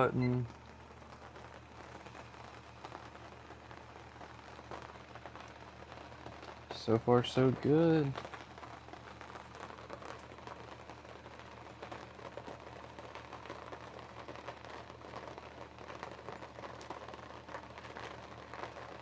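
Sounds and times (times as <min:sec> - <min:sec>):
steady low hum: 0:00.0 - 0:12.0
light rain pattering: 0:00.0 - 0:19.0.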